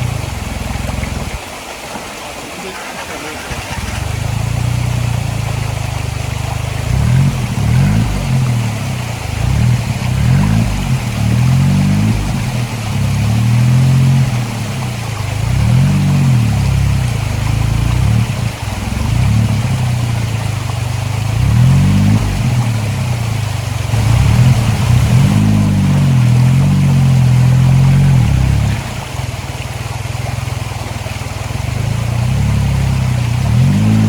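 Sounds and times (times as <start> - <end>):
engine revving under load: 2.6 - 20.6, 21.2 - 29.3, 31.7 - 34.0.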